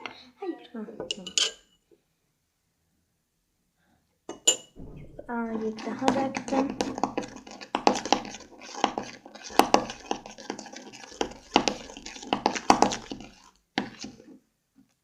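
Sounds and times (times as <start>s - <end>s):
spoon scraping and clinking bowl: 6.7s - 14.2s.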